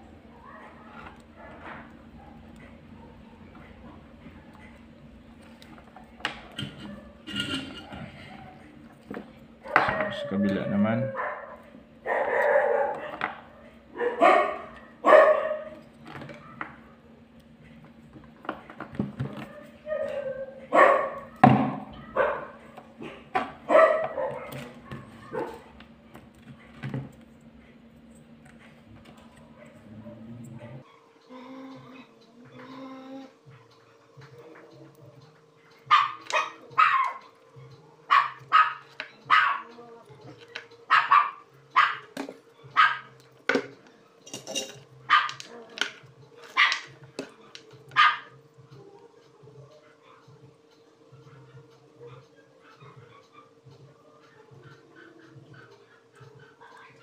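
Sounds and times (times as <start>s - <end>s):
faint steady hum: 0.0s - 57.0s
dog barking: 0.4s - 3.5s, 9.6s - 10.3s, 11.0s - 15.8s, 19.5s - 25.7s, 35.8s - 39.8s, 40.9s - 43.2s, 45.1s - 45.8s, 46.5s - 48.4s, 51.2s - 53.6s.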